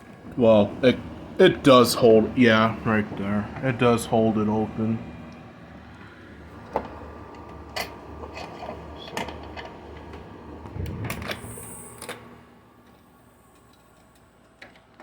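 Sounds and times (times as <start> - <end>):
door closer hiss: 10.8 - 12.4.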